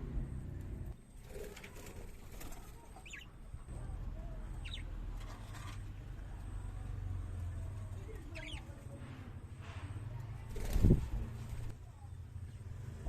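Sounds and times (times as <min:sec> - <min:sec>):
bird chirping: 0:02.6 - 0:05.1, 0:08.0 - 0:08.8.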